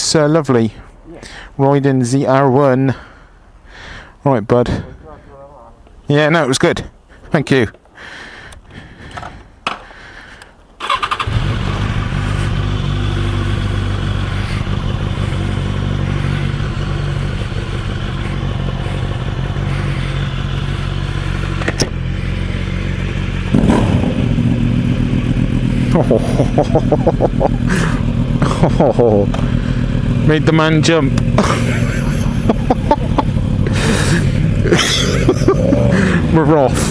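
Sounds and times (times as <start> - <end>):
electric starter cranking: 10.8 - 11.7
motorcycle engine idling and revving: 10.8 - 36.9.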